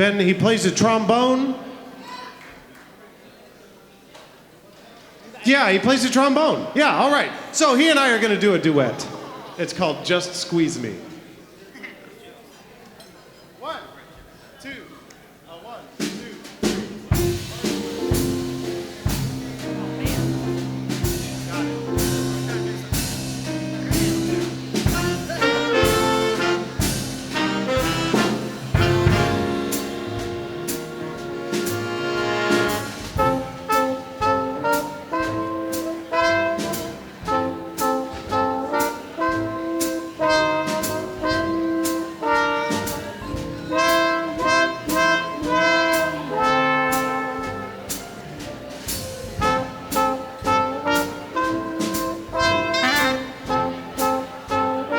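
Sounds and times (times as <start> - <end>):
steady drum beat: 16.0 - 54.9
brass and saxophones: 16.6 - 54.9.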